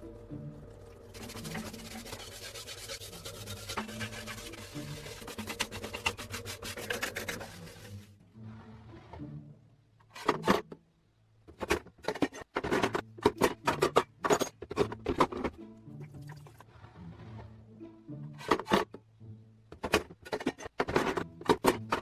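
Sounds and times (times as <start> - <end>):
quiet background music: 0.0 - 22.0
abrasive rubbing on rusty metal: 1.2 - 8.1
sharp scraping strokes: 1.2 - 8.1.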